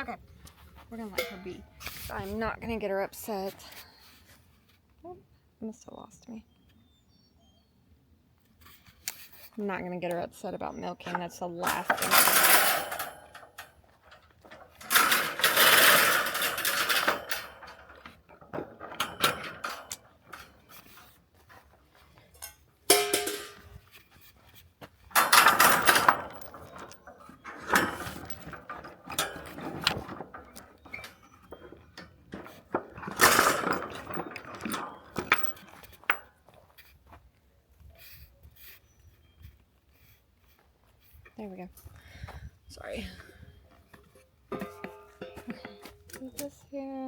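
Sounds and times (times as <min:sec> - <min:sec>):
metal pail clanking and rattling: 0:01.1 - 0:02.2, 0:11.0 - 0:21.6, 0:22.4 - 0:23.8, 0:25.1 - 0:36.3, 0:44.4 - 0:46.1.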